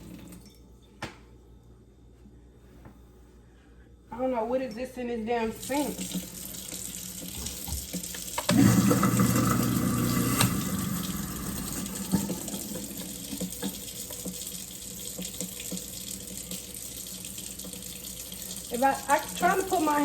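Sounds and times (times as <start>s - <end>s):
faucet running into sink: 5.5s - 20.0s.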